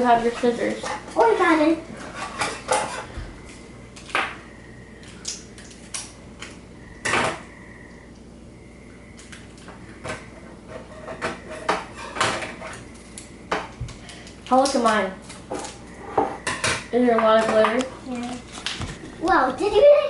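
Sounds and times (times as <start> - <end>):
utensils and containers clinking: 13.6 - 18.7.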